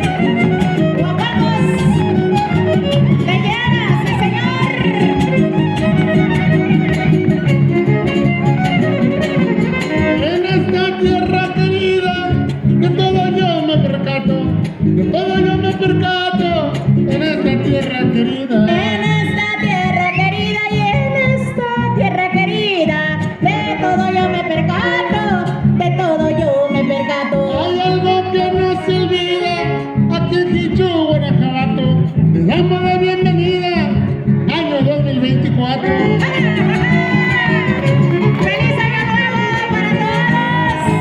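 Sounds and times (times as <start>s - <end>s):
violin melody: 0.0s - 11.6s, 35.8s - 41.0s
falsetto singing: 0.0s - 41.0s
strummed guitars: 0.0s - 41.0s.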